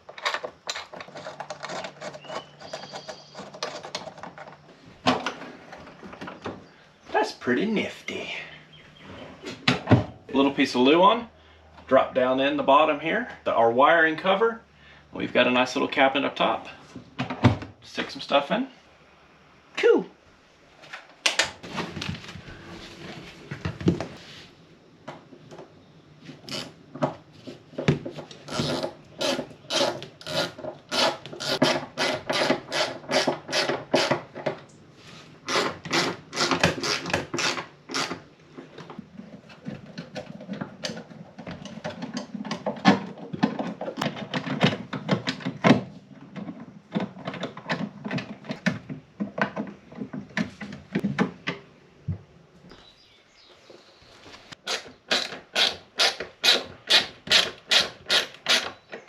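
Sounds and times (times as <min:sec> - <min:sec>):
hand tool rasping on wood: 0:28.5 - 0:34.1.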